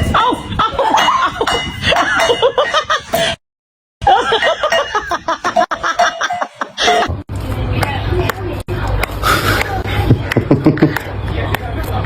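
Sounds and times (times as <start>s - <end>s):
people laughing: 0.1s - 3.3s, 4.0s - 7.2s, 9.2s - 11.2s
voices: 4.1s - 12.0s.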